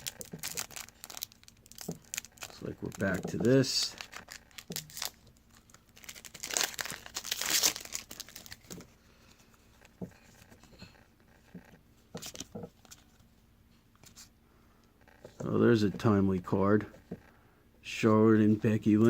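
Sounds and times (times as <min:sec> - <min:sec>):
foil wrapper crinkling and tearing: 0:00.0 - 0:08.8.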